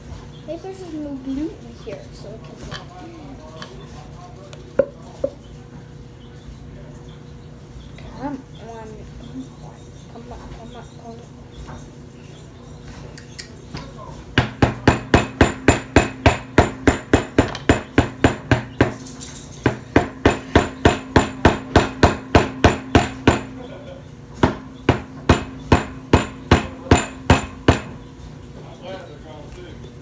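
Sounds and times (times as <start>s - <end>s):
utensil knocking against bowl: 4.8s - 5.4s, 14.4s - 19.0s.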